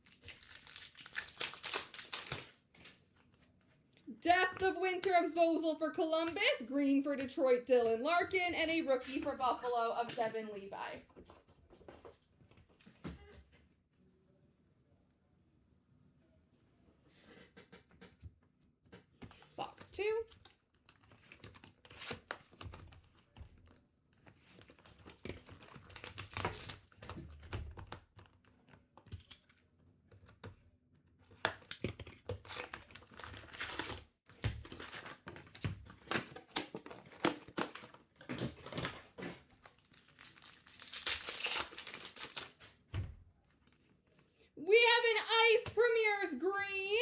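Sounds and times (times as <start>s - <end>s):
packaging crinkling and tearing: 0.0s - 3.1s, 24.4s - 29.6s, 31.3s - 42.8s.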